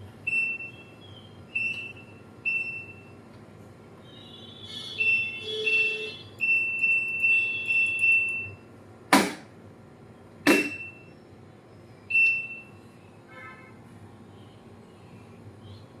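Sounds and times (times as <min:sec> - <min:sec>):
washing machine beeping: 0:00.2 - 0:03.3, 0:04.0 - 0:08.8, 0:10.5 - 0:11.2, 0:12.0 - 0:13.0
sharp knocks: 0:09.1 - 0:09.5, 0:10.5 - 0:10.8.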